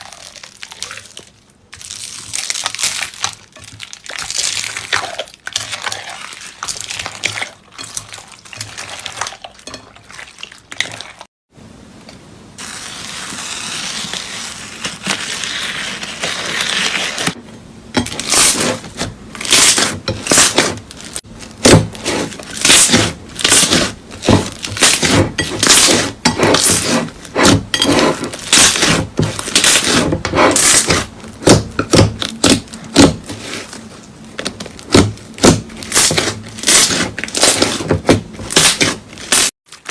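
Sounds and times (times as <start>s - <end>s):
slime crackling and popping: 0.0s - 7.6s.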